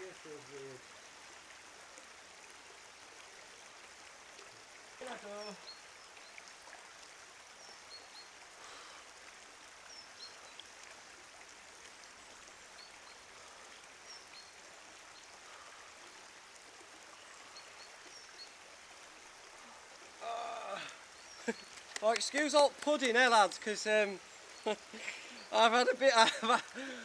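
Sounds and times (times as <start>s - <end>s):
trickle of running water: 0.0s - 27.0s
small birds chirping: 5.0s - 6.5s, 20.2s - 27.0s.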